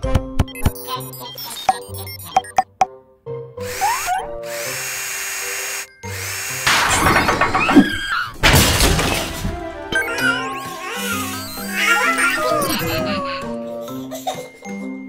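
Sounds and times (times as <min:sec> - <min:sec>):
cartoon background music: 0:00.0 - 0:15.0
clattering and whirring tools: 0:03.7 - 0:13.0
hissing: 0:03.7 - 0:13.0.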